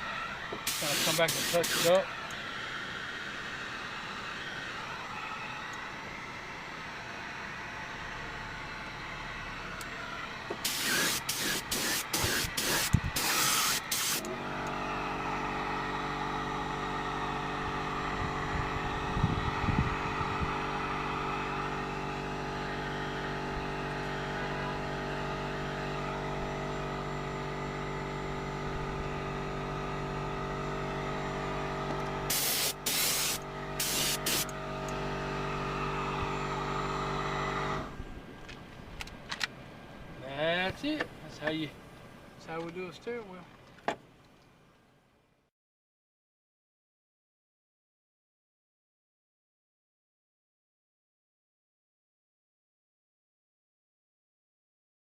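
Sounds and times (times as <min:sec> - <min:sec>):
hand-held drying blower humming: 0:00.0 - 0:38.0
spray gun bursts: 0:00.6 - 0:02.0, 0:10.6 - 0:14.3, 0:32.3 - 0:34.5.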